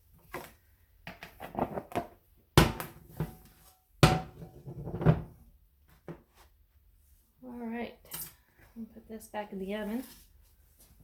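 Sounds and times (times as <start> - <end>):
heavy thumps: 4.0 - 5.0
cast iron skillet clattering: 4.0 - 5.2.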